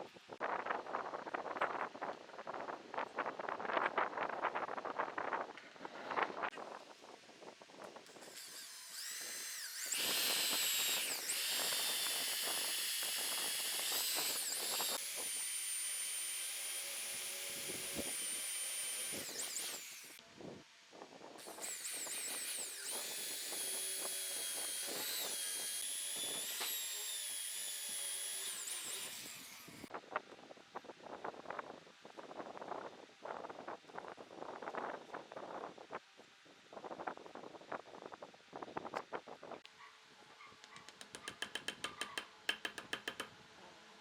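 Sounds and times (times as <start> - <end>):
electric power tool whining: 8.1 - 20.2, 21.4 - 29.9.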